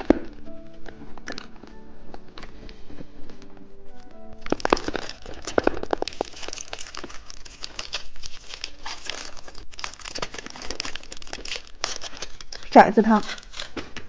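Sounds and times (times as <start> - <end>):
candy wrapper crinkling and tearing: 4.4 - 14.0.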